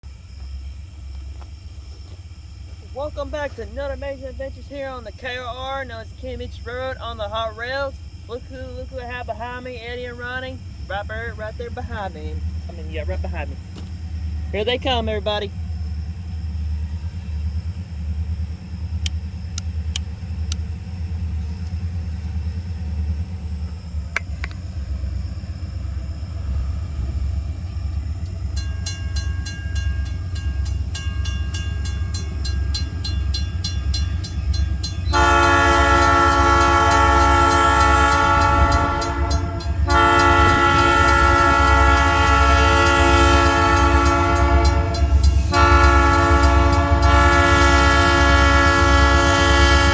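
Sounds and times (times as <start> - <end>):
diesel locomotive engine rumble: 0.0 - 49.9
locomotive air horn blasts: 35.1 - 49.9.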